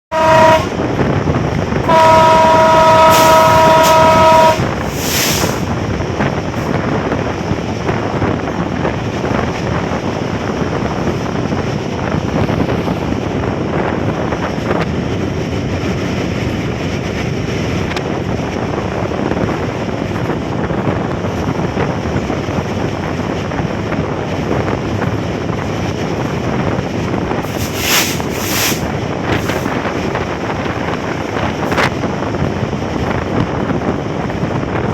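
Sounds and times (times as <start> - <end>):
train rumbling at speed: 0.0 - 34.9
train horn: 0.1 - 0.9, 1.8 - 5.6
wind noise: 0.1 - 34.9.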